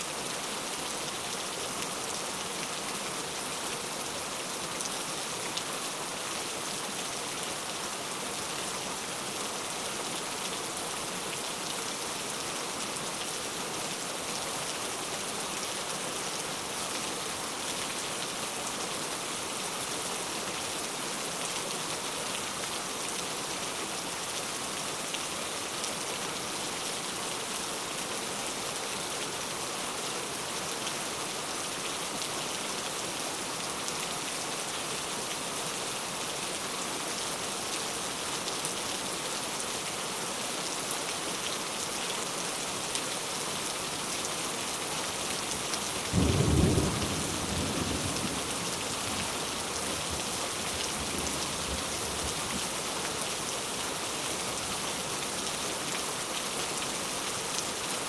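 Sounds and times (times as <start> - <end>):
steady rain falling: 0.0 - 58.0.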